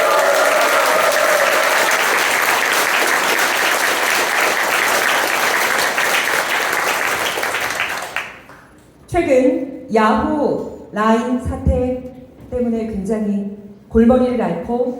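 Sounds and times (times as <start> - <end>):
crowd applauding and cheering: 0.0 - 8.7.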